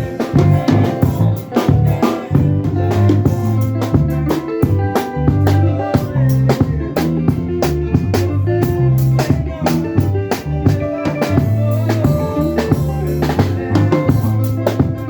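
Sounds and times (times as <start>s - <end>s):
band music: 0.0s - 15.0s
bass line: 0.0s - 15.0s
drum kit beat: 0.0s - 15.0s.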